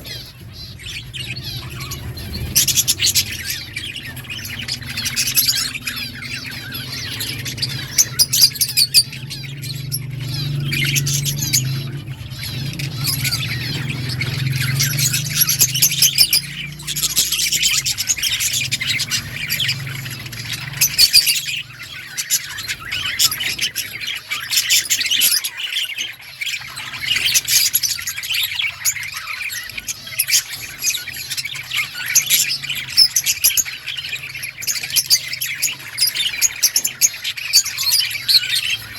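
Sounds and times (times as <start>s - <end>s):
budgerigars chirping and chattering: 0.0s - 38.9s.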